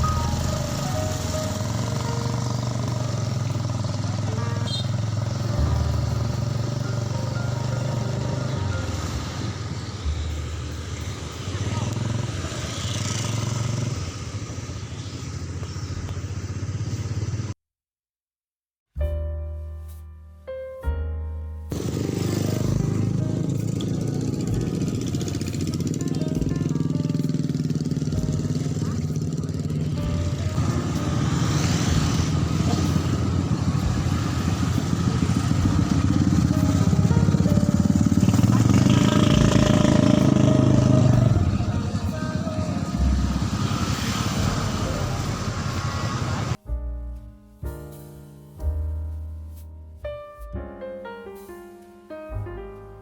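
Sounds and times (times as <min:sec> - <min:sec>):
engine running with rapid pulsing: 0:00.0 - 0:17.5, 0:21.7 - 0:46.6.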